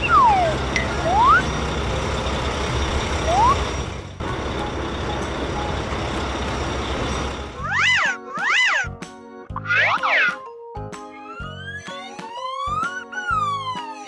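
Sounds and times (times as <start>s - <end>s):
cartoon truck engine running: 0.0s - 8.1s, 11.5s - 14.0s
short rising whistle: 3.3s - 3.7s.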